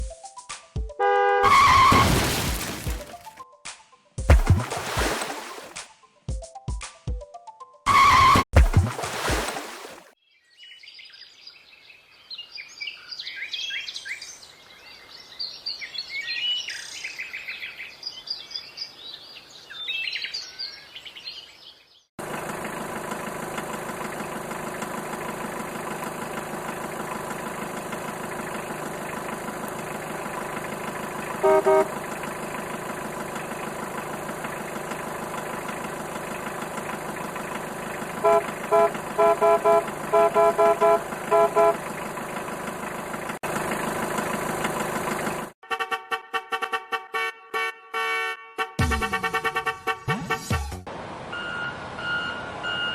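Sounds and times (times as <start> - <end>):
truck horn honks: 1.0 - 2.2, 7.9 - 8.5, 31.2 - 32.6, 38.1 - 42.0, 45.6 - 52.9
truck engine running: 22.2 - 45.6.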